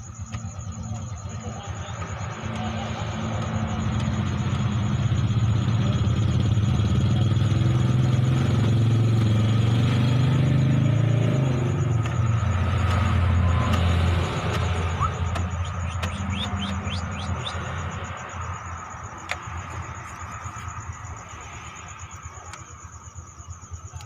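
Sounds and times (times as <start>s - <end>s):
vehicle engine running: 0.0s - 24.0s.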